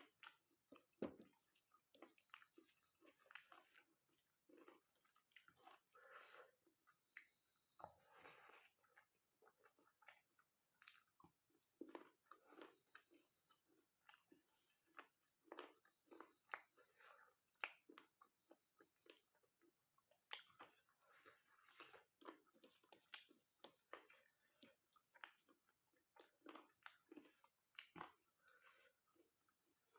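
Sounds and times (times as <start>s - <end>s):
person chewing food: 0.0s - 29.9s
food crunch: 0.1s - 6.1s, 21.7s - 29.0s.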